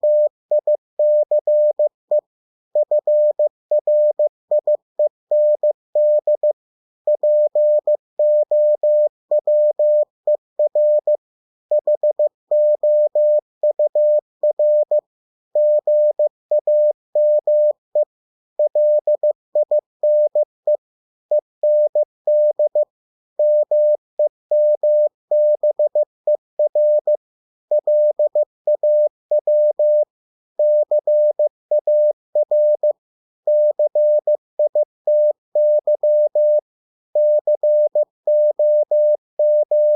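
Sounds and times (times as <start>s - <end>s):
morse code beeps: 0.0s - 1.9s, 2.8s - 6.5s, 7.1s - 10.0s, 10.6s - 11.1s, 11.7s - 15.0s, 15.6s - 20.5s, 21.6s - 22.8s, 23.4s - 26.0s, 26.6s - 32.9s, 33.5s - 36.6s, 37.2s - 39.9s.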